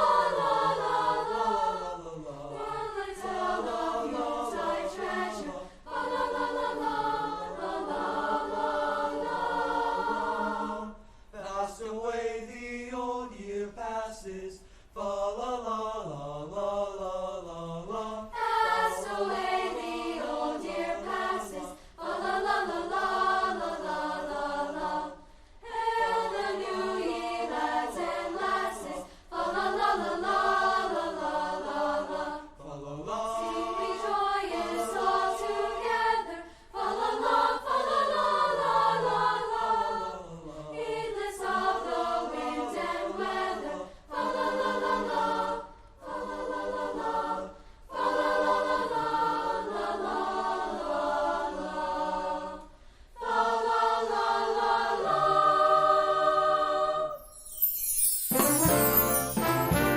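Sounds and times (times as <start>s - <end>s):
choir singing: 0.0s - 59.9s.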